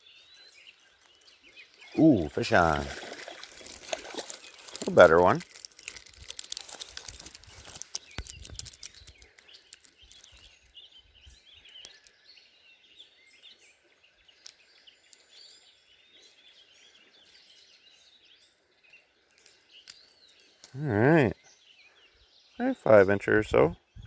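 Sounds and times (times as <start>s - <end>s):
songbirds singing and chirping: 0.0s - 24.0s
faint stream hiss: 1.7s - 5.5s
clicks and rustling: 2.4s - 10.7s.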